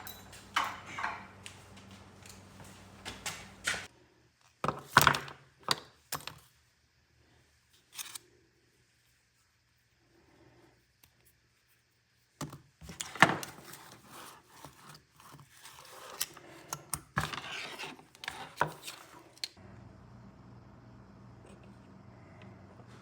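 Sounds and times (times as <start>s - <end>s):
steady low hum: 0.0s - 4.2s, 19.6s - 23.0s.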